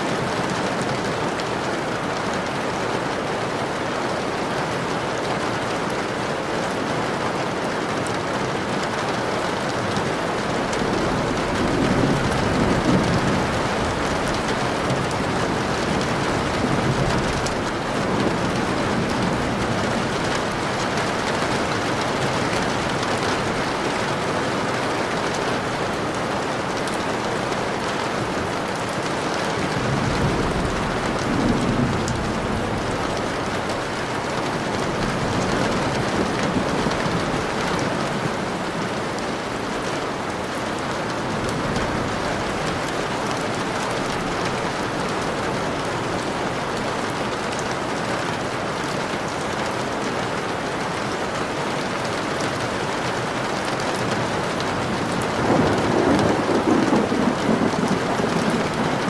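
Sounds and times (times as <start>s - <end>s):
steady rain: 0.0s - 59.0s
thunder rumbling: 10.0s - 40.0s, 54.0s - 59.0s.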